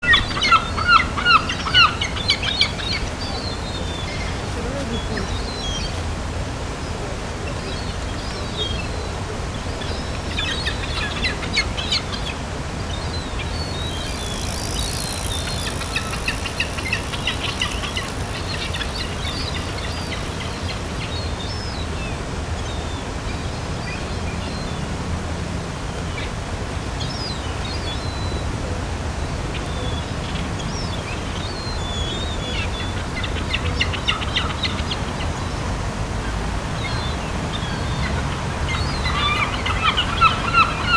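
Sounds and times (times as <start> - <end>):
seagulls calling: 0.0 - 6.0, 6.9 - 21.7, 31.4 - 40.9.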